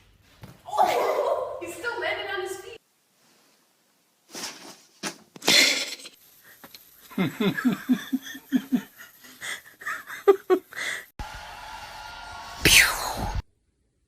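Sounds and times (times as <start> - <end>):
person laughing: 7.0 - 11.0.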